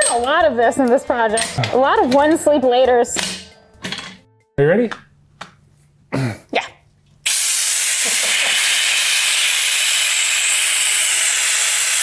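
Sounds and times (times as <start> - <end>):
compressed air hissing from valve: 7.2 - 12.0.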